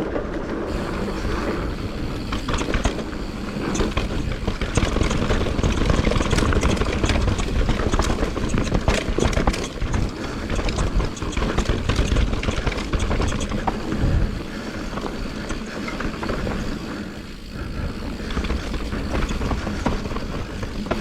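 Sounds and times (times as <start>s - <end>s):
bike clicking and rattling: 0.0s - 21.0s
wind and tyres rumbling: 0.0s - 21.0s.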